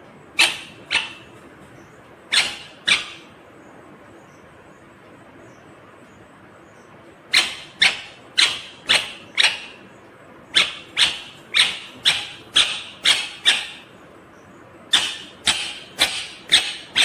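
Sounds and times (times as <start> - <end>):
parakeet shrill calls: 0.4 - 1.4, 2.3 - 3.3, 7.3 - 9.8, 10.5 - 13.9, 14.9 - 17.0.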